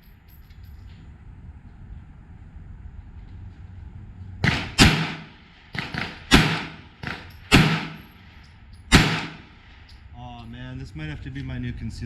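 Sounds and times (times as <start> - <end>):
faint distant gunshots: 4.4 - 8.1, 8.9 - 9.6
pistol shots: 4.4 - 8.2, 8.9 - 9.6.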